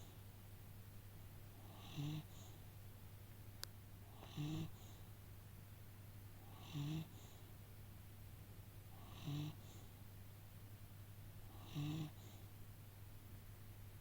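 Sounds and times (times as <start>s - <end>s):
snoring: 1.6s - 2.5s, 4.1s - 5.0s, 6.5s - 7.3s, 9.0s - 9.8s, 11.5s - 12.4s.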